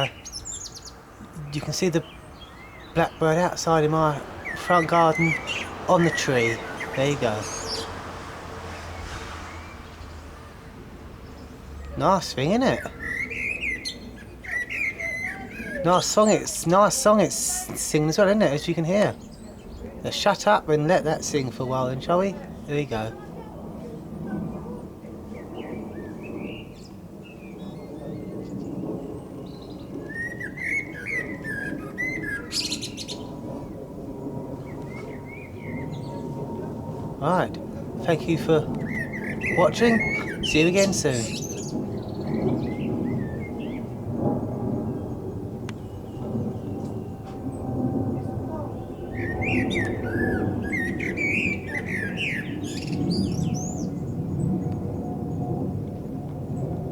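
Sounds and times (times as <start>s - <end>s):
blackbird singing: 0.0s - 8.0s, 11.2s - 23.2s, 25.3s - 33.8s, 34.5s - 43.9s, 48.2s - 54.7s.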